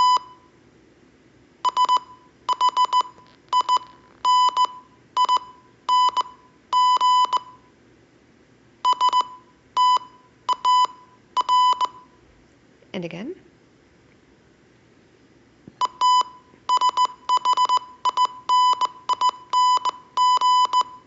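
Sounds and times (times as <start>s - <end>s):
morse code beeps: 0.0s - 0.5s, 1.6s - 7.6s, 8.9s - 12.2s, 15.8s - 21.0s.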